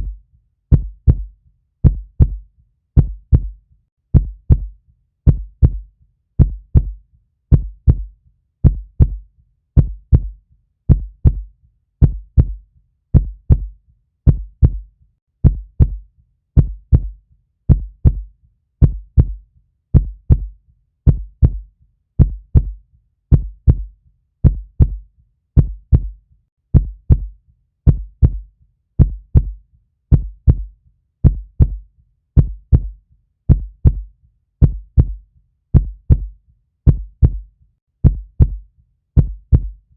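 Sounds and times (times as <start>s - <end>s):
heartbeat thuds: 0.0s - 2.4s, 3.0s - 9.2s, 9.8s - 16.0s, 16.6s - 25.0s, 25.6s - 31.8s, 32.4s - 38.6s, 39.2s - 39.8s.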